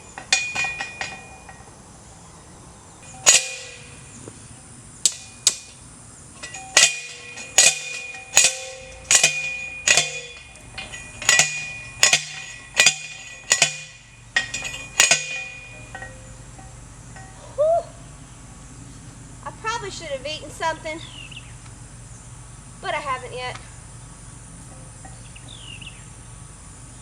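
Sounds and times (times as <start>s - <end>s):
hammer striking metal: 0.0s - 1.7s, 3.0s - 4.2s, 6.4s - 17.4s.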